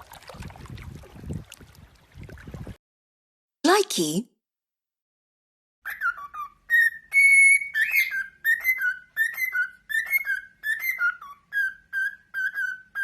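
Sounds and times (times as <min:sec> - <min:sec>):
pet bird whistling: 0:05.9 - 0:13.0.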